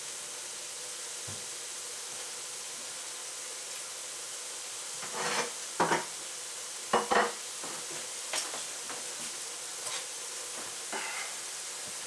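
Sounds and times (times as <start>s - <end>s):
meat sizzling in a pan: 0.0s - 12.0s
utensil scraping a pan: 5.0s - 6.1s, 9.8s - 10.1s, 10.9s - 11.4s.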